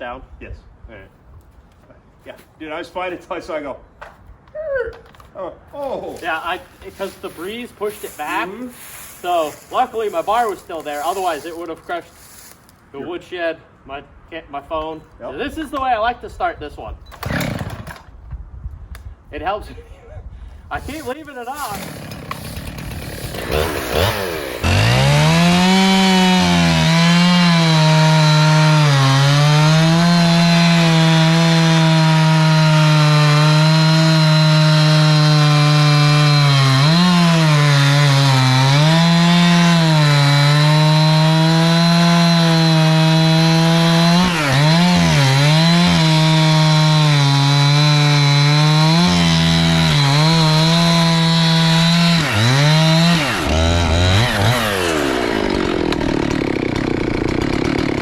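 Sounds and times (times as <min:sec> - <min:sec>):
chainsaw cutting tree: 0:17.2 - 0:18.1, 0:21.5 - 0:58.0.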